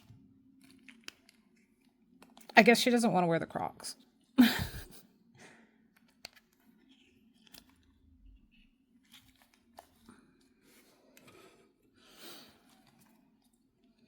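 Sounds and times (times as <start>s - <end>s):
packaging rustling: 6.3s - 10.1s.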